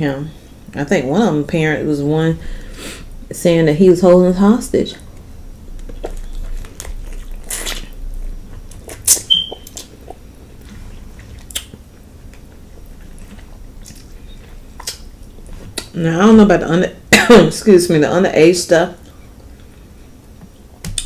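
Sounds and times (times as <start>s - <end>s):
chewing and wet lip smacking: 5.8s - 15.1s.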